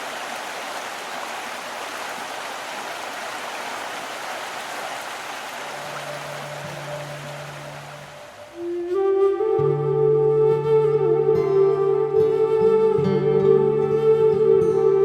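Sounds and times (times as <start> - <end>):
running water rushing: 0.0 - 9.8.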